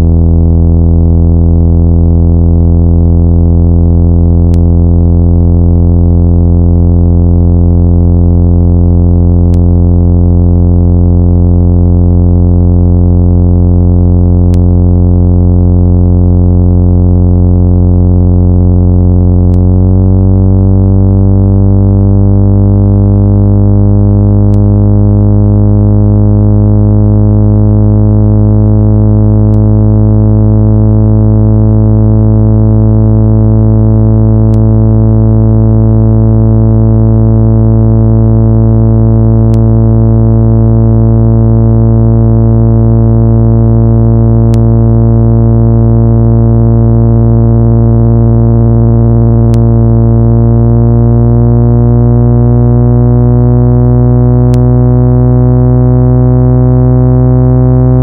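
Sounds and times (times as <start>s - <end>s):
low electronic tone: 0.0s - 58.0s
faint click: 19.5s - 19.7s, 44.5s - 44.7s, 49.5s - 49.7s.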